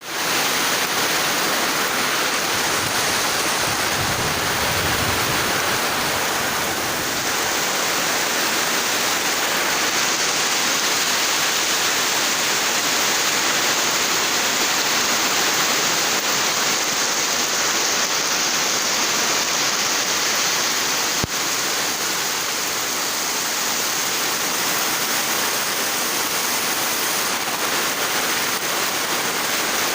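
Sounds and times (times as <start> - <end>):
heavy rain pouring: 0.0 - 29.9
wind gust rumble: 2.4 - 7.5.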